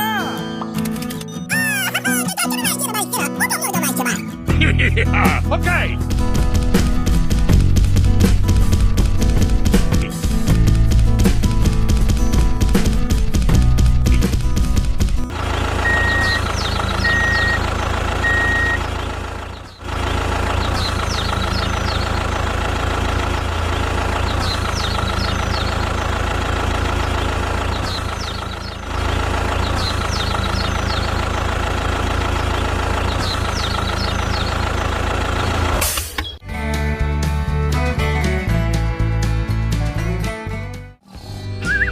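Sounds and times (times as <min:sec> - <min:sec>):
engine running steadily: 0:04.5 - 0:36.4.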